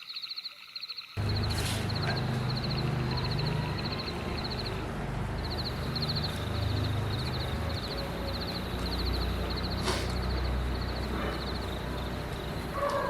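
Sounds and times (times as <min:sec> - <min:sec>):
frogs trilling: 0:00.0 - 0:13.0.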